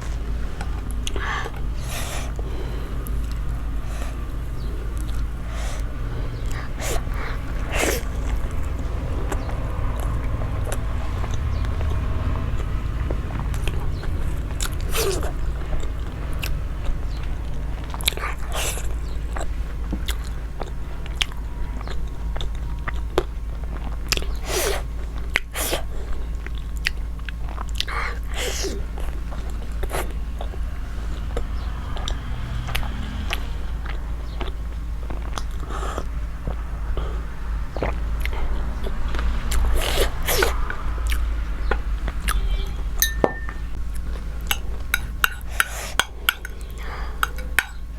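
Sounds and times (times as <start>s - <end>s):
steady low hum: 0.0s - 39.6s, 40.8s - 47.9s
crunchy chewing: 43.9s - 47.9s.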